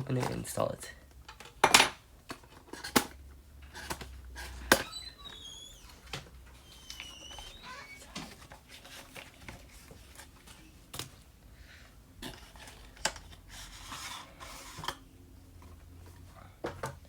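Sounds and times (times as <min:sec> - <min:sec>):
cardboard and packaging rustling: 0:06.0 - 0:11.3.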